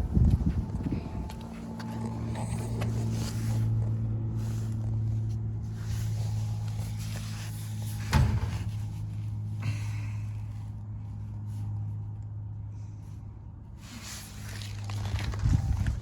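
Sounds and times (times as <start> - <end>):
low machine hum: 0.0 - 16.0.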